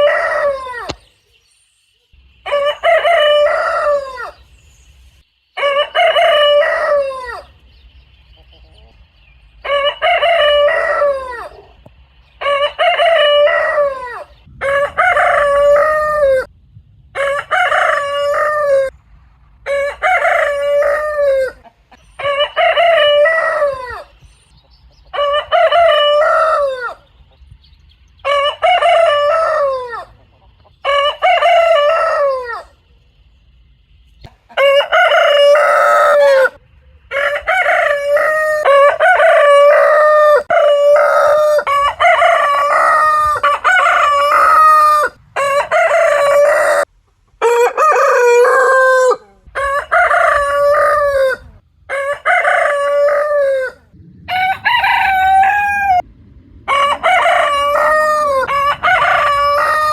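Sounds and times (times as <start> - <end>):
rooster crowing: 0.0 - 1.0, 2.4 - 4.5, 5.6 - 7.6, 9.6 - 11.8, 12.4 - 16.5, 17.2 - 19.0, 19.6 - 24.2, 25.1 - 27.1, 28.2 - 30.2, 30.8 - 32.8, 34.5 - 59.9.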